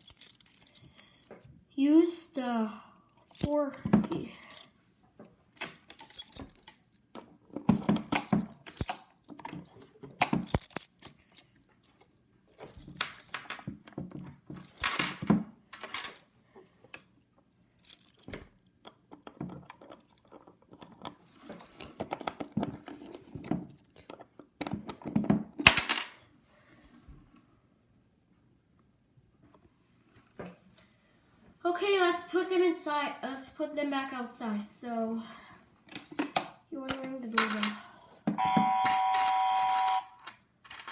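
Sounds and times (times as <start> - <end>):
toy keys rattling and clicking: 0.0 - 1.2, 3.3 - 3.6, 4.3 - 4.7, 5.6 - 7.0, 8.0 - 13.5, 17.8 - 18.4.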